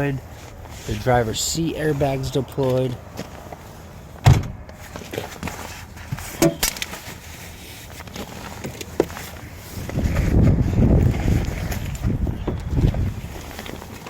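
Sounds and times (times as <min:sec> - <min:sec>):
car door thump: 0:04.2 - 0:04.6.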